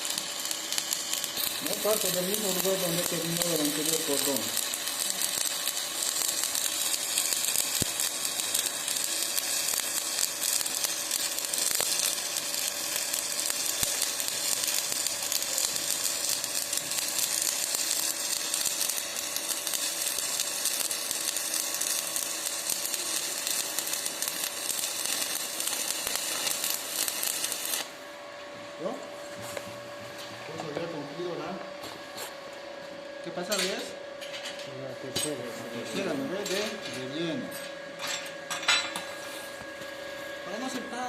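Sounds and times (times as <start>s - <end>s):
welding arc crackling: 0.0s - 28.0s.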